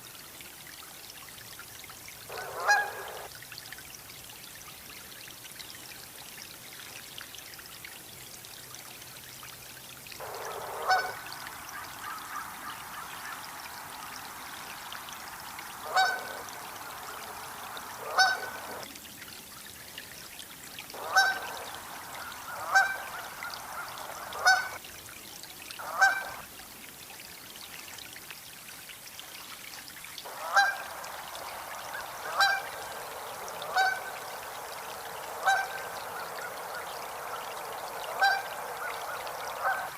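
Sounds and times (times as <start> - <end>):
goose honking: 2.3 - 3.3, 10.2 - 18.8, 21.0 - 24.8, 30.3 - 39.9.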